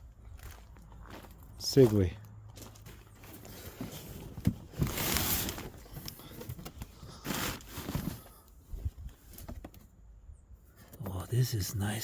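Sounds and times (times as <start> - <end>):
scraping and rustling: 2.9 - 8.4.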